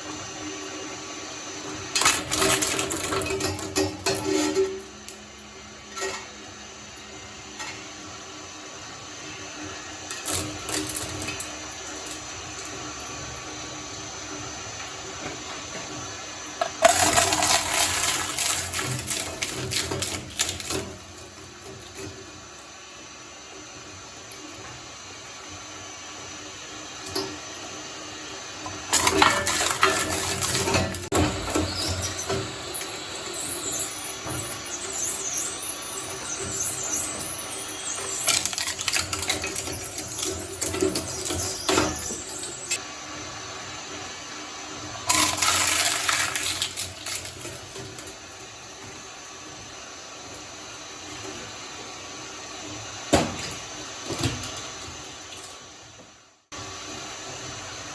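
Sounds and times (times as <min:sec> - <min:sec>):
shredder humming: 0:00.0 - 0:23.0, 0:28.2 - 0:44.0, 0:44.8 - 0:49.1.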